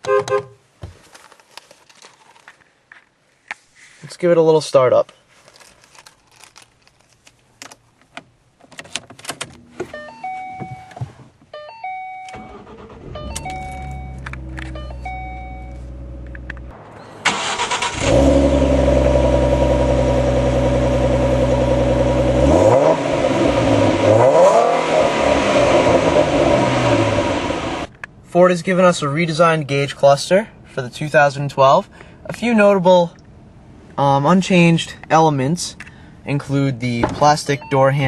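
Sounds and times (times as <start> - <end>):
dashboard chimes: 9.9 - 16.2, 37.2 - 38.0
car engine cranking and idling: 12.2 - 28.4
car engine revving: 12.4 - 14.9, 15.9 - 27.9.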